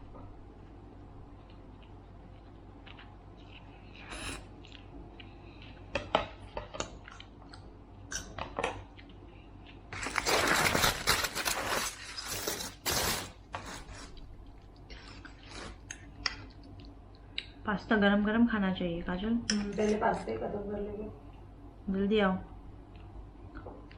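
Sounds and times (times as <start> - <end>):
cutlery scraping food containers: 10.7 - 14.1.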